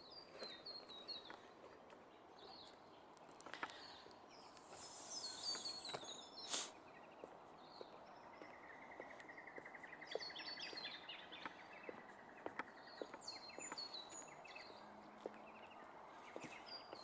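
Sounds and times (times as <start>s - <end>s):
birds singing: 0.0s - 17.0s
footsteps on wooden boards: 7.2s - 15.4s, 16.3s - 17.0s.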